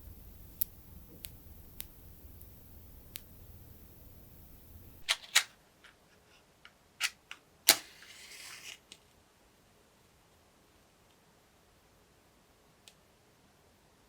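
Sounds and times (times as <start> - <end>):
soft sizzle: 0.0 - 5.1
wooden wick crackling: 0.0 - 5.1.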